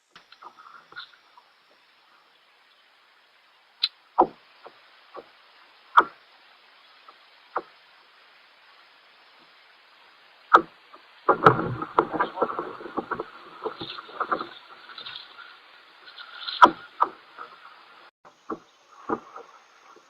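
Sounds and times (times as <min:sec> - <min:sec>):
gear knocking in a kayak: 0:11.3 - 0:15.4, 0:16.1 - 0:17.6, 0:18.4 - 0:20.0.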